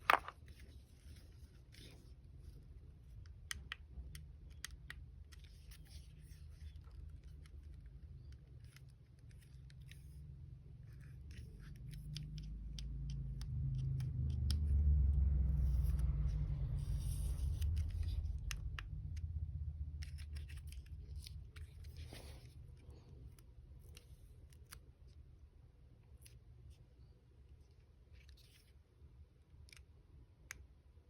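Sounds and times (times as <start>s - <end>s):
plastic parts clicking and scratching: 0.0s - 14.8s, 20.0s - 25.2s
low rumble: 14.4s - 22.0s.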